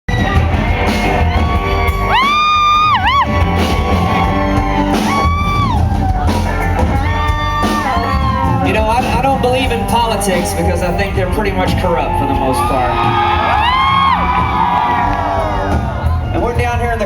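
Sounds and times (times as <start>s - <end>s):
live country band playing: 0.1s - 17.0s
long held whoops: 0.9s - 6.4s, 7.0s - 8.7s, 12.0s - 16.3s.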